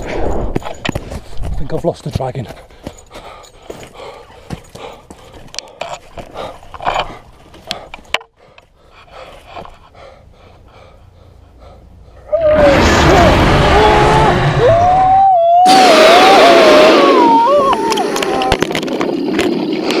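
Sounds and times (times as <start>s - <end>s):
hard panting breaths: 2.4s - 12.3s.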